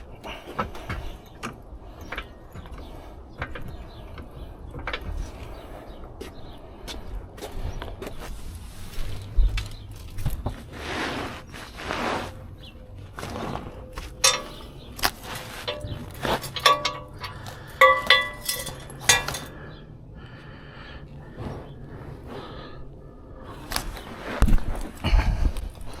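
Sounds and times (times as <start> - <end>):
metal tools knocking and clinking: 14.2 - 14.8, 15.6 - 19.6.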